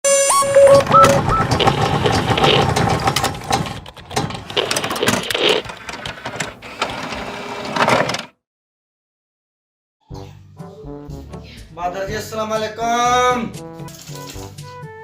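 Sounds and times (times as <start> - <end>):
sewing machine clattering: 0.7 - 8.3.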